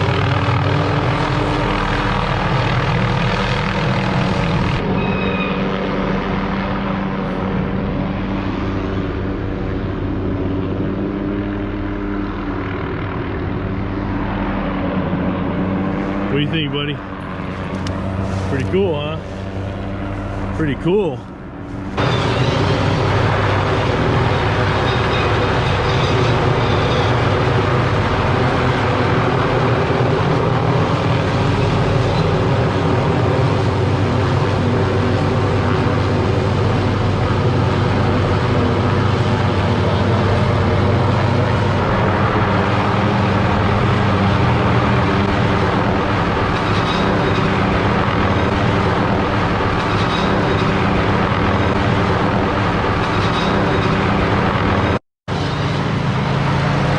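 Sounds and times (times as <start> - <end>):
helicopter rotor and engine: 0.0 - 56.9
rotary saw droning: 21.5 - 30.3.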